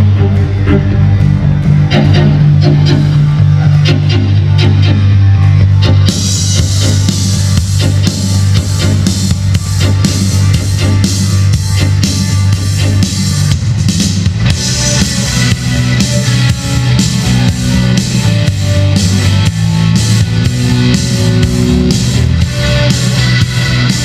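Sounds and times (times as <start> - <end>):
loud rock music: 0.0 - 24.0.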